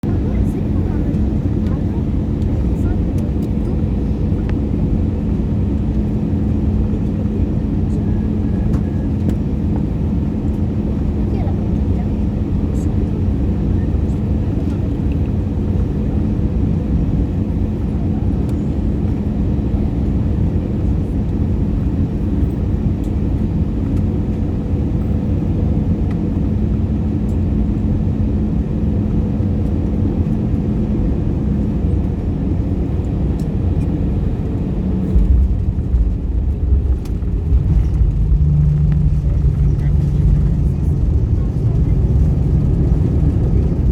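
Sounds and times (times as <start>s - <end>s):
aircraft cabin engine rush: 0.0s - 43.9s
constant low hum: 0.0s - 43.9s
uneven low rumble: 31.5s - 43.9s.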